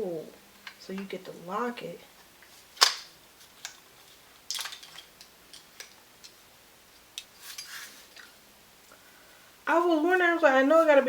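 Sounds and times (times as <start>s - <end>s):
tripod parts clicking and rattling: 2.2s - 6.4s.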